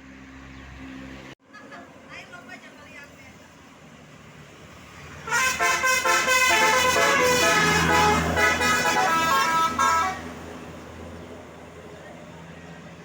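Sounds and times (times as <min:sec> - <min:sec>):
bus multi-tone horn melody: 0:05.2 - 0:10.6.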